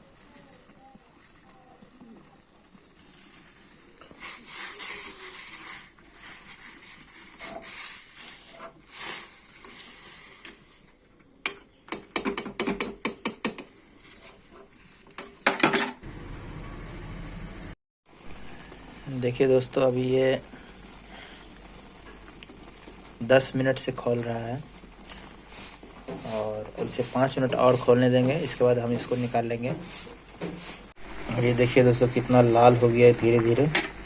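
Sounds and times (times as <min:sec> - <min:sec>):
hissing and rustling: 0:00.0 - 0:12.0, 0:13.5 - 0:15.5, 0:20.2 - 0:31.4.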